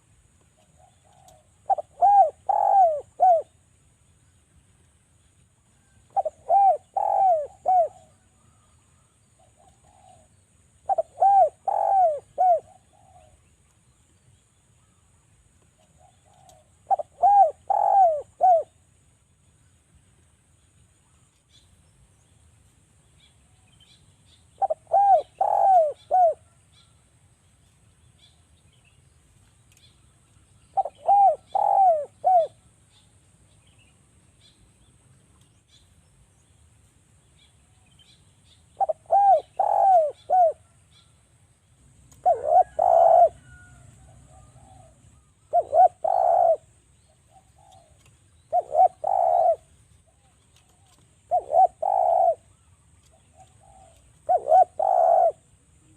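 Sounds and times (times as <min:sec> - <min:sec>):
dove cooing: 0:00.6 - 0:03.6, 0:06.1 - 0:08.6, 0:09.4 - 0:13.4, 0:15.8 - 0:18.9, 0:24.6 - 0:26.6, 0:30.7 - 0:32.6, 0:38.8 - 0:40.8, 0:42.1 - 0:55.9.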